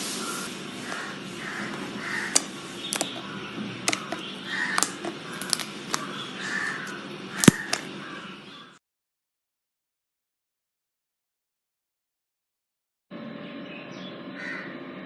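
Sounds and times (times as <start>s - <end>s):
slime squelching and popping: 2.3s - 3.2s, 3.9s - 6.1s.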